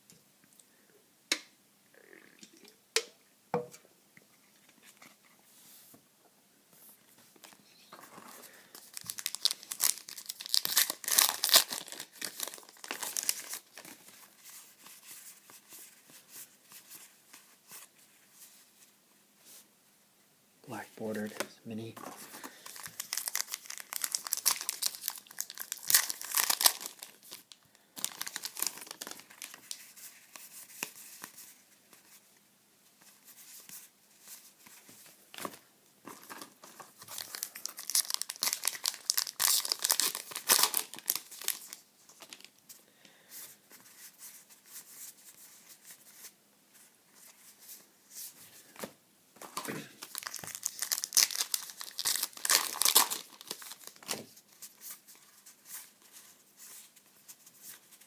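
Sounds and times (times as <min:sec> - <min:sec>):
card pack wrappers crinkling: 0:07.4 - 0:14.5, 0:22.0 - 0:31.3, 0:35.4 - 0:42.6, 0:49.4 - 0:55.9.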